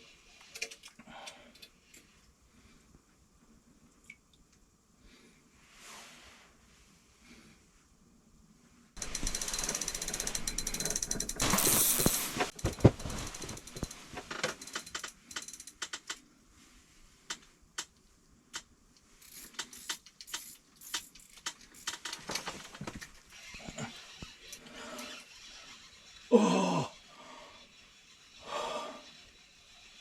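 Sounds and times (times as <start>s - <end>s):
fishing reel clicker ratcheting: 9.0s - 12.3s, 13.2s - 16.2s, 19.2s - 22.2s.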